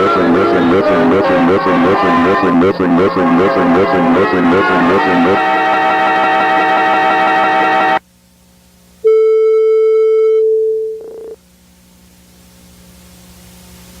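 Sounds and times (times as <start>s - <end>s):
music: 0.0s - 8.0s
steady electronic tone: 0.0s - 8.0s, 10.3s - 11.4s
faint low hum: 8.0s - 14.0s.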